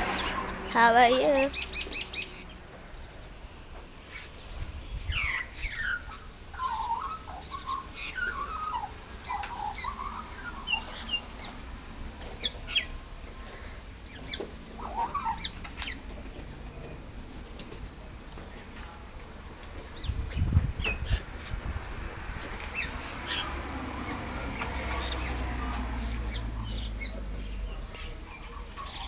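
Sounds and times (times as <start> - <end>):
birds chirping and whistling: 0.0 - 2.7, 4.1 - 11.6, 24.9 - 29.0.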